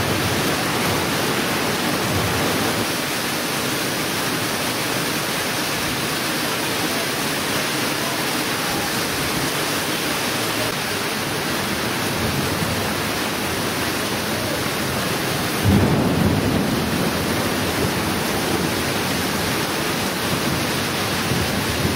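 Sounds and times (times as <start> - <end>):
rain pouring: 0.0 - 21.9
thunder rumble: 14.2 - 21.9.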